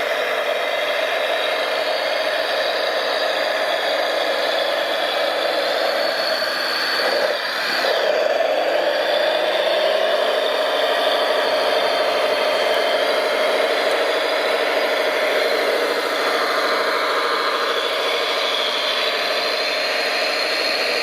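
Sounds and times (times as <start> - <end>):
toy machine motor whirring: 0.0 - 21.0.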